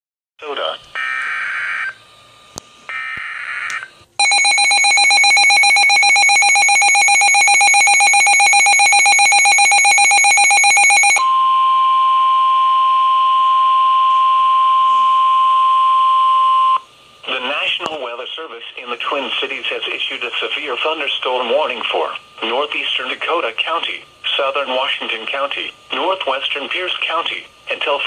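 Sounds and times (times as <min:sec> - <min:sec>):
two-tone attention signal: 0:04.2 - 0:16.8
steady single-pitch warning tone: 0:04.2 - 0:16.9.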